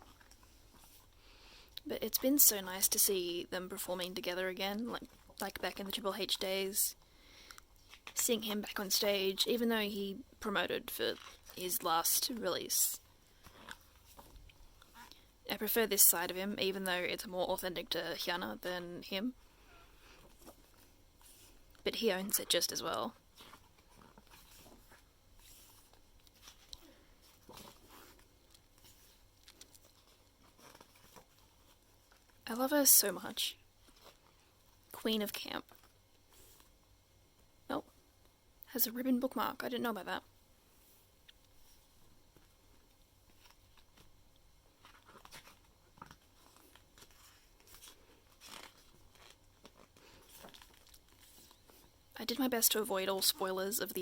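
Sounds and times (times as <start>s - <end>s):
paper rustling: 20.0s - 32.5s, 43.3s - 52.0s.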